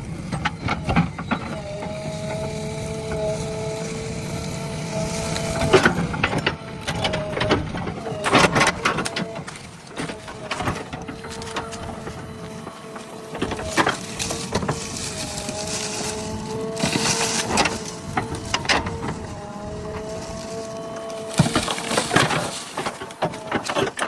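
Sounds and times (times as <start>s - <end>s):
backhoe engine whining: 0.0s - 24.0s
digging knocks and cracks: 5.3s - 24.0s.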